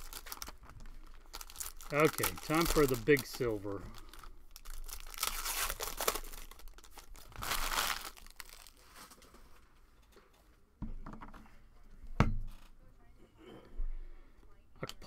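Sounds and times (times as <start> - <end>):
foil wrapper tearing and crinkling: 0.0 - 9.2.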